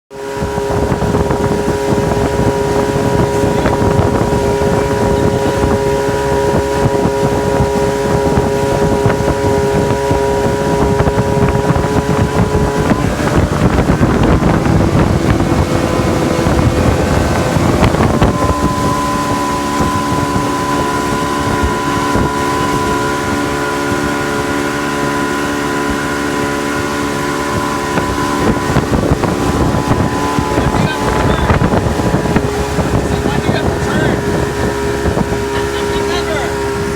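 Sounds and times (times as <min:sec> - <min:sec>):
boat engine running: 0:00.1 - 0:36.9.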